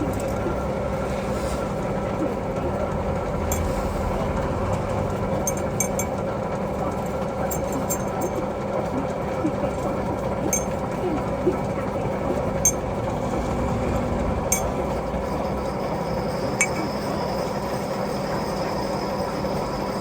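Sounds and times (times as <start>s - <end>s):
metal lathe humming: 0.0s - 20.0s.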